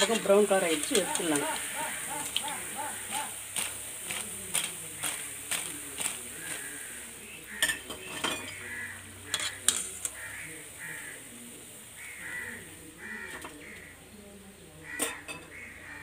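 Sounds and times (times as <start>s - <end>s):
metal ladle scraping pan: 0.0s - 2.7s, 3.4s - 10.8s, 13.3s - 13.8s
frying sizzle: 0.0s - 16.0s.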